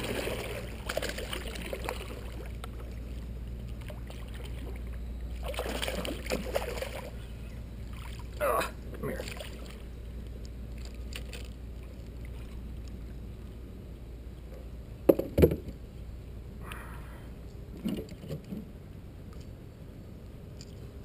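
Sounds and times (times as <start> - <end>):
steady low rumble: 0.0 - 21.0
knocks on kayak: 15.1 - 15.7.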